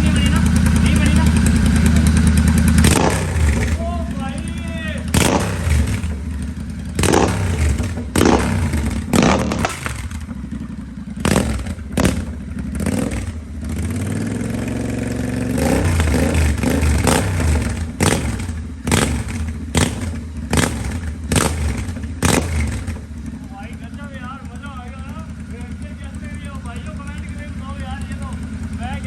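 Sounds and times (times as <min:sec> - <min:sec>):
motorcycle engine revving: 0:00.0 - 0:29.0.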